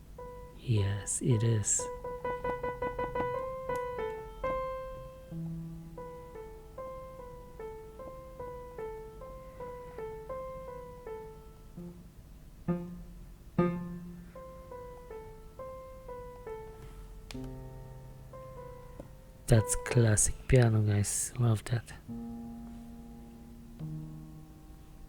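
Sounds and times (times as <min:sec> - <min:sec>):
low bass piano notes: 0:00.0 - 0:25.0
piano melody: 0:00.0 - 0:25.0.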